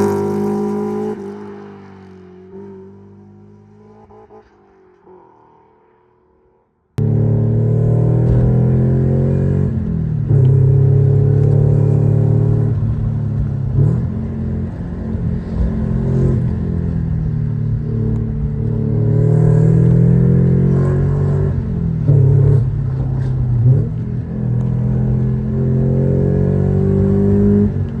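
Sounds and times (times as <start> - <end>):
car engine rumble through gears: 7.0 - 28.0.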